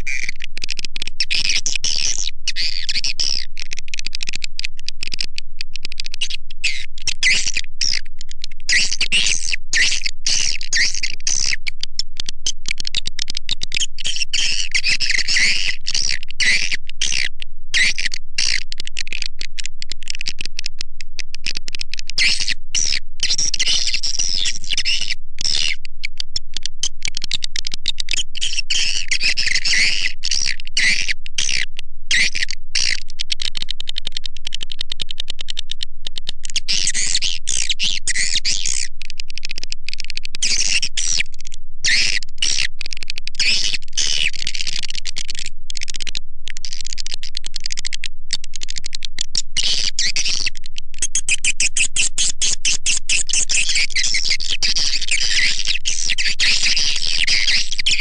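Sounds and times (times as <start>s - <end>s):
recorded swiftlet twittering calls: 0.0s - 4.2s, 6.0s - 8.1s, 8.7s - 20.5s, 21.5s - 26.2s, 26.9s - 33.1s, 36.6s - 38.9s, 40.4s - 46.1s, 48.6s - 58.0s.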